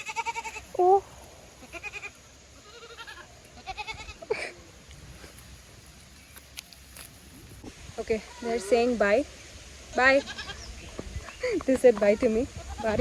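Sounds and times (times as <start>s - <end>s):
goats bleating: 0.0s - 1.0s, 1.6s - 4.8s.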